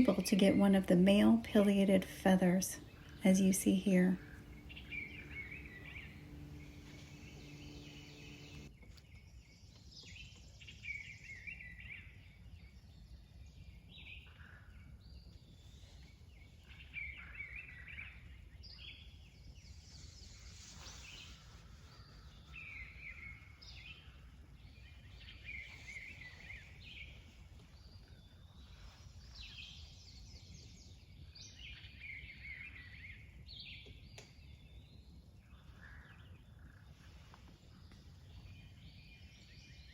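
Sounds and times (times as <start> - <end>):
steady low rumble: 0.0 - 8.7
birds calling: 1.5 - 8.7.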